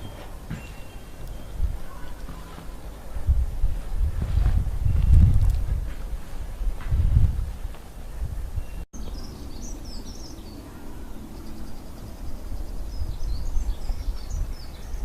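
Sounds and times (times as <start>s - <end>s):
birds chirping: 0.0s - 3.3s, 7.6s - 15.0s
steady low rumble: 2.9s - 15.0s.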